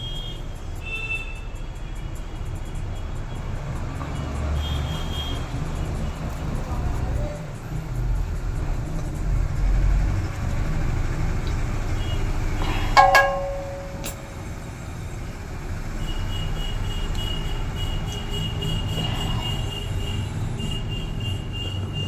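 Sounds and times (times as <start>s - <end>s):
faint high steady tone: 13.0s - 14.4s.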